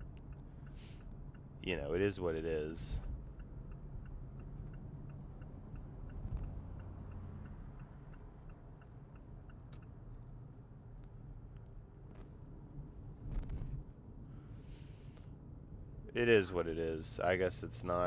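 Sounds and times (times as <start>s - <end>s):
car turn signal ticking: 0.0s - 11.8s
car engine and road noise: 0.0s - 18.0s.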